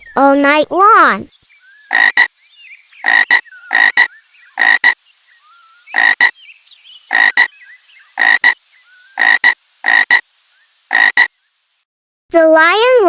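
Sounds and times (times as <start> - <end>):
frog croaking: 1.9 - 2.3, 3.0 - 5.0, 5.9 - 6.4, 7.1 - 7.5, 8.2 - 8.6, 9.2 - 10.2, 10.9 - 11.3.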